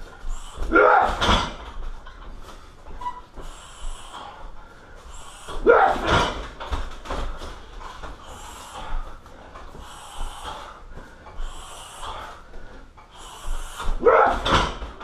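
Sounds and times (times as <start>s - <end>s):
person breathing: 2.4s - 5.6s, 6.4s - 14.0s
person grunting exhale: 5.4s - 6.4s.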